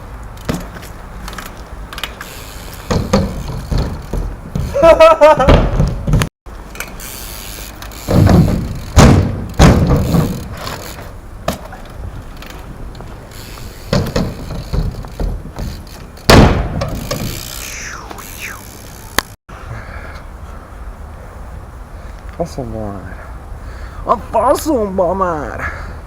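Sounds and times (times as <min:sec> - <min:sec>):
bike landing thuds: 0:00.4 - 0:07.0, 0:07.9 - 0:17.6
steady hiss: 0:17.0 - 0:26.0.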